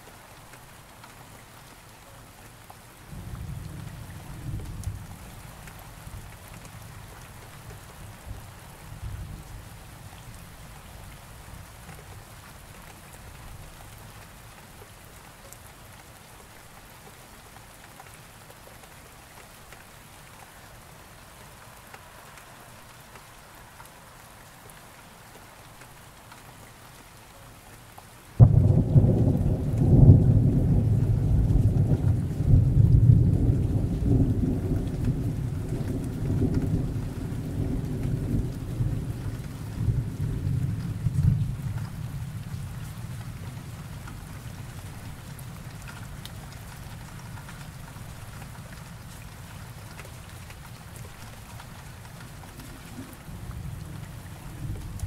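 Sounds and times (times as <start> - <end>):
soft rain falling: 0.0 - 55.0
thunder crack and rumble: 28.4 - 43.8.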